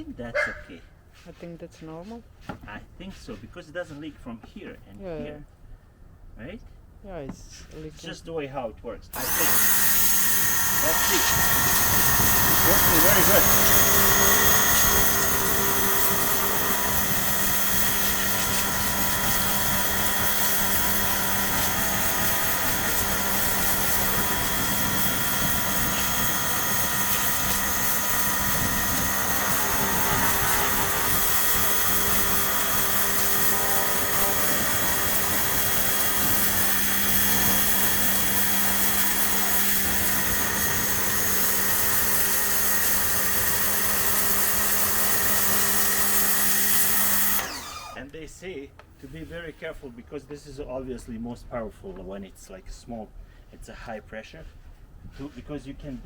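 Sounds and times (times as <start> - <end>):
high-pressure water jet hissing: 9.2 - 48.0
pressure washer motor whine: 9.2 - 48.0.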